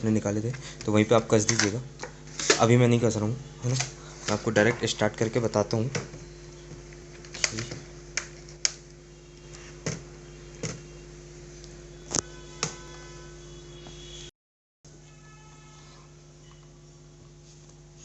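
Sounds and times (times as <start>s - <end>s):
steady low hum: 0.0s - 14.3s.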